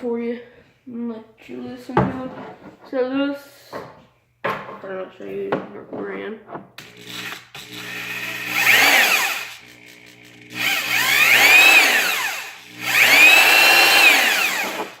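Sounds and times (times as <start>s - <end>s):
electric drill whining: 6.8s - 15.0s.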